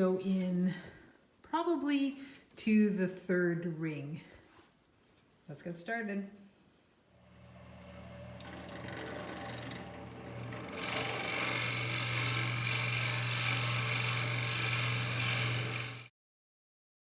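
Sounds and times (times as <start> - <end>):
drill bit cutting wood: 7.2 - 16.1
lathe motor hum: 7.2 - 16.1.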